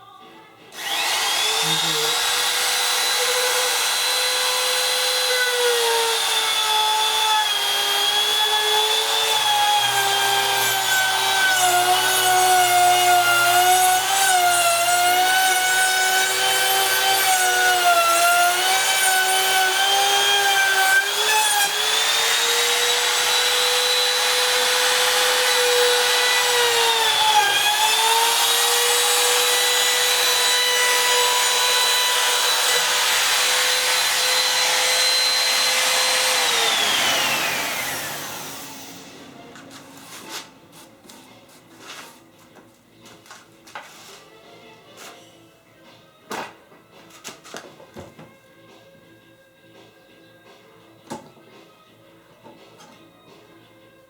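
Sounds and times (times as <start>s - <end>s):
power tool motor whine: 0.8s - 6.4s.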